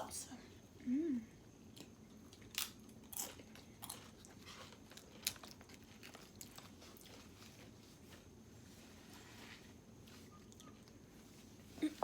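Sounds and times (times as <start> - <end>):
person chewing food: 1.7 - 8.3.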